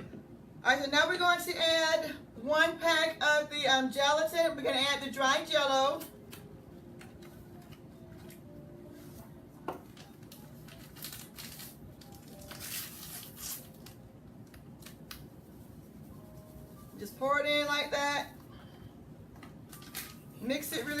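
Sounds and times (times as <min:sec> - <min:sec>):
packet rustling: 0:09.9 - 0:15.3.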